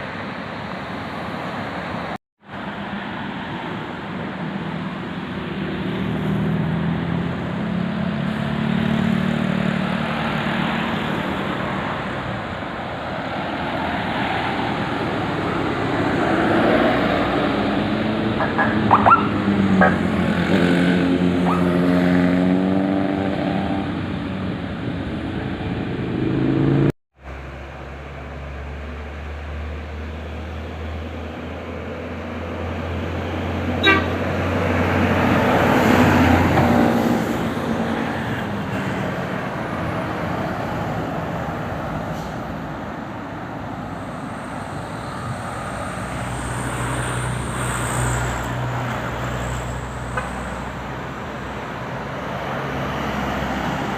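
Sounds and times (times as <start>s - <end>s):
road traffic: 0.0s - 53.9s
musical bus horn: 33.8s - 34.3s.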